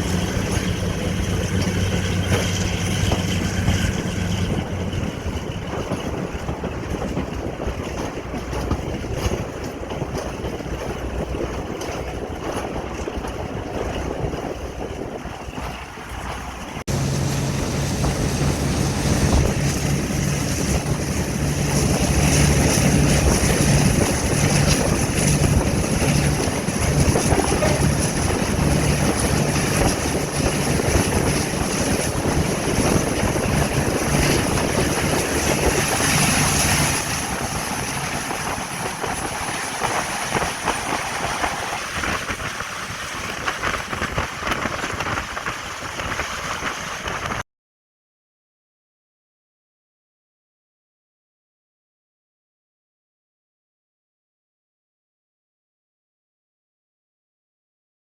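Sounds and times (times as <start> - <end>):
diesel locomotive engine drone: 0.0 - 47.4
rush of train: 0.0 - 47.5
high whine: 16.9 - 38.5.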